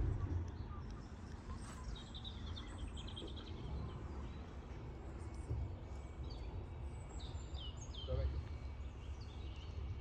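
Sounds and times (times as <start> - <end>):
low outdoor rumble: 0.0 - 10.0.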